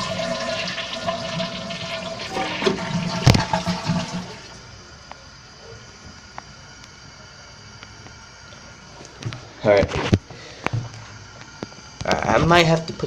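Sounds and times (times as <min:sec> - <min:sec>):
toilet flushing water rushing: 0:00.0 - 0:10.1.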